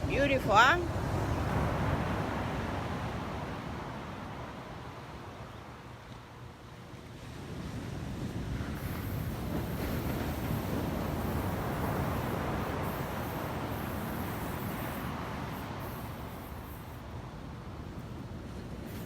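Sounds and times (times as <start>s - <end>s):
waves breaking: 0.0s - 6.0s, 6.9s - 19.0s
wind rumbling on microphone: 6.9s - 19.0s.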